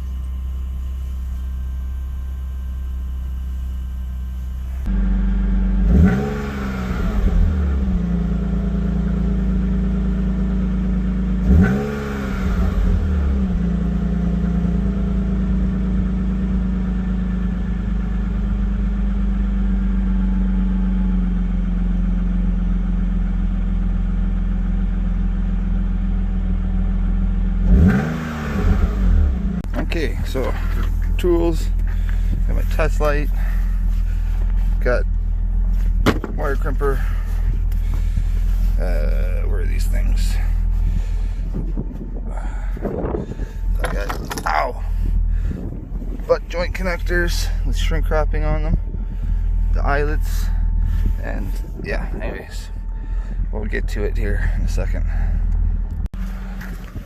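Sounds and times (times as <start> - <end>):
car engine idling: 0.0 - 57.0
engine revving: 4.8 - 20.6, 27.4 - 57.0.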